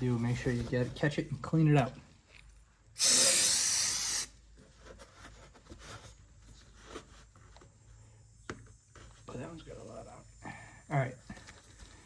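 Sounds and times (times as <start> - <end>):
aerosol spray hissing: 3.0 - 4.3.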